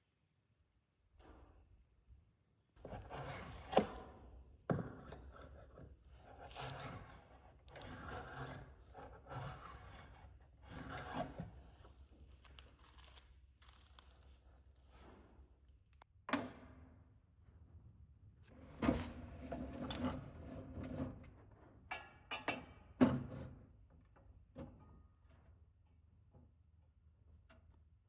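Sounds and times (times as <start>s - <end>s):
hand tool scraping wood: 5.2s - 12.1s.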